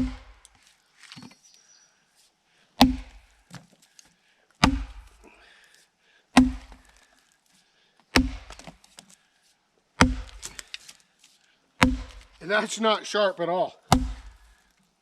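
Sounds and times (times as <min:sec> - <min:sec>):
axe splitting firewood: 0:00.0 - 0:01.4, 0:02.8 - 0:05.3, 0:06.3 - 0:07.2, 0:08.1 - 0:09.2, 0:10.0 - 0:11.0, 0:11.8 - 0:12.5, 0:13.9 - 0:14.7.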